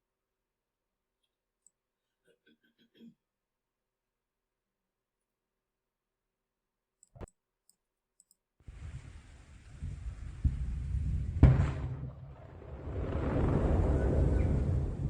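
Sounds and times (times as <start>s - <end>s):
low wind-like rumble: 8.7s - 15.0s
sharp thud: 11.4s - 12.2s.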